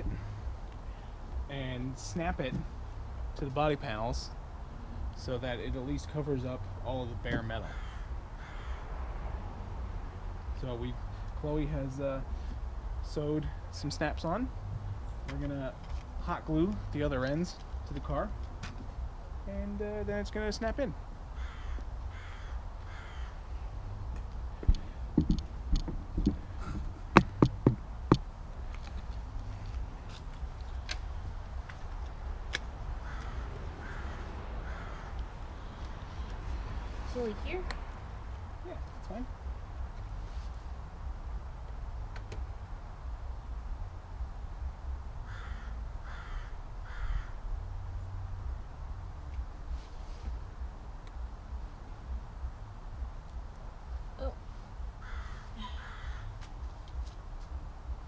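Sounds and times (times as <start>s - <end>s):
steady low rumble: 0.0s - 58.0s
harsh bird calls: 7.6s - 8.9s, 21.3s - 23.7s, 33.0s - 36.7s
dull knocks: 24.6s - 28.3s.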